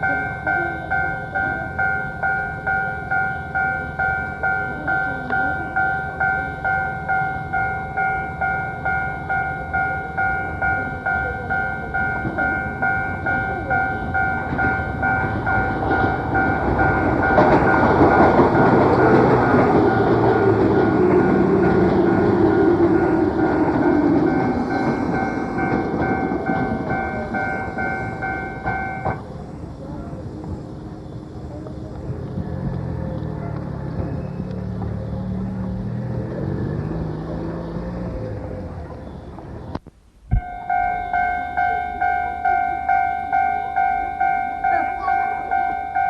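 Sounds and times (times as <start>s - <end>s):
level crossing alarm ringing: 0.0s - 29.3s, 40.3s - 46.0s
electric train passing: 0.0s - 46.0s.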